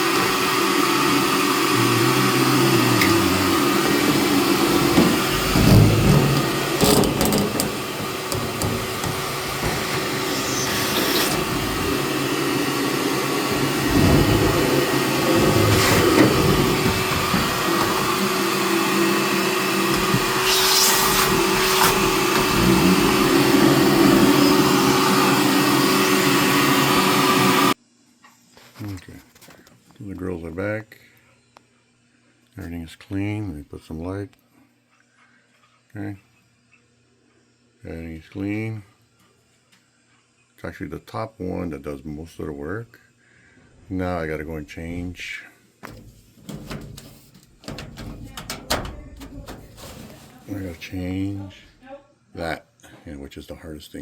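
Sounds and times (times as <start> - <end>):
vacuum cleaner running: 0.0 - 27.8, 45.8 - 51.5
nozzle knocking and scraping: 3.0 - 24.6, 45.8 - 51.5.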